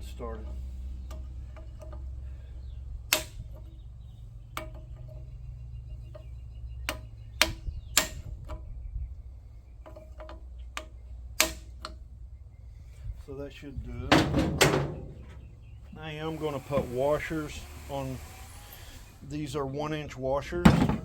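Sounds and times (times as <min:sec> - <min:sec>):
steady low hum: 0:00.0 - 0:21.0
metallic clicks and knocks: 0:00.4 - 0:02.1, 0:04.5 - 0:08.7, 0:09.8 - 0:12.0, 0:14.0 - 0:15.6.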